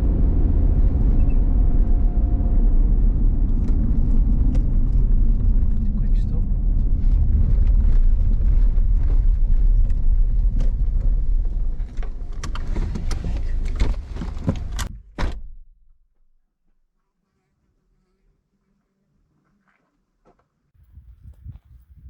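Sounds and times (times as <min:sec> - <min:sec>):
road and engine rumble: 0:00.0 - 0:15.0.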